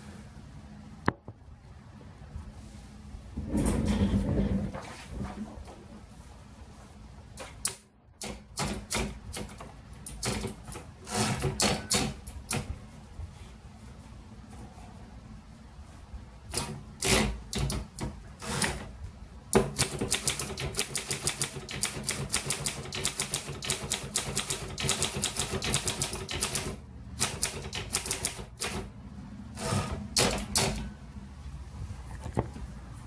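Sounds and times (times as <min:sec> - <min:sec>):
typewriter keystrokes: 0:19.8 - 0:28.8.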